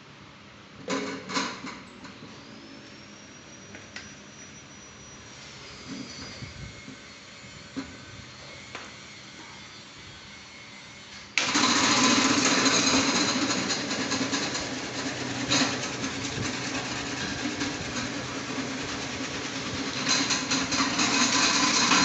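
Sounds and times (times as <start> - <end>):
slicing machine whirring: 11.4 - 22.0.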